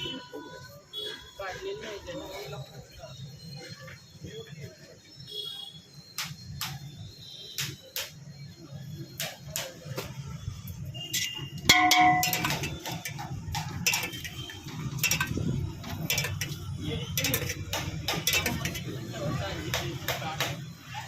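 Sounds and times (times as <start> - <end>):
spoon clinking against metal bowl: 11.2 - 19.1
loud ringing clang: 11.7 - 16.6.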